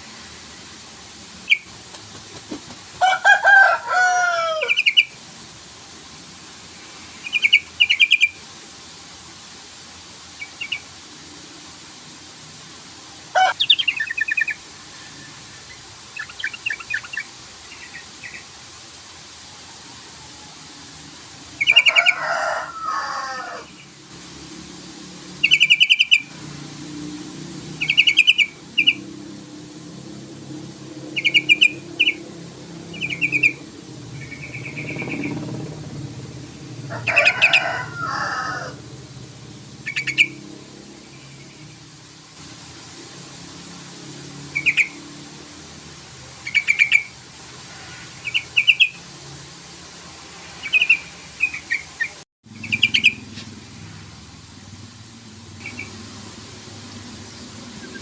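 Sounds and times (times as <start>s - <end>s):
bird singing chattering call: 7.2s - 8.4s, 13.6s - 18.4s, 25.4s - 26.3s, 27.8s - 29.0s, 31.1s - 32.2s, 32.9s - 35.5s, 39.9s - 40.4s, 44.5s - 45.0s, 46.5s - 47.1s, 48.2s - 49.0s, 50.6s - 53.3s
steady low hum: 28.4s - 38.0s.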